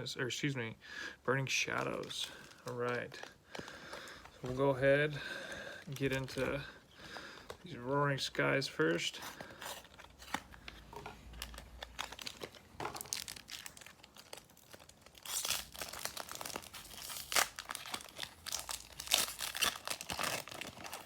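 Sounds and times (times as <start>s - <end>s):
foil wrapper tearing and crinkling: 9.2s - 21.0s.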